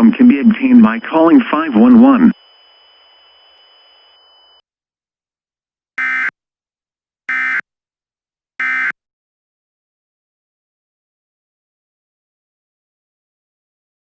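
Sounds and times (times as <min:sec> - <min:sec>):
buzzing digital data bursts: 0:06.0 - 0:06.3, 0:07.3 - 0:07.6, 0:08.6 - 0:08.9.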